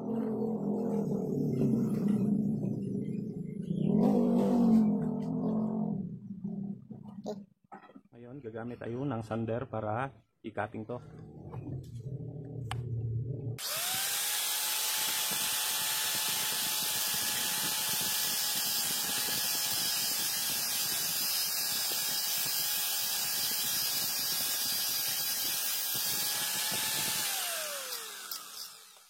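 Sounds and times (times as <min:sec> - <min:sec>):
electric sander cutting steel: 0:13.6 - 0:29.0.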